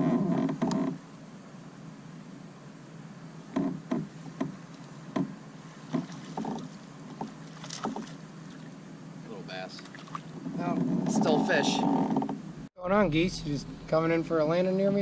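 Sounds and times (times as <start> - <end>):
steady low background: 12.4 - 15.0.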